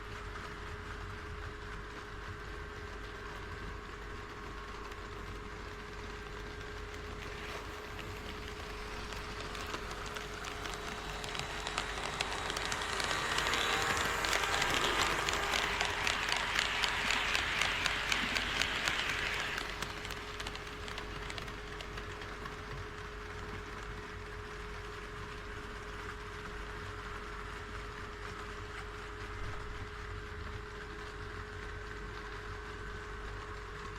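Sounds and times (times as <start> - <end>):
model train wheels clicking on rails: 2.9 - 28.9.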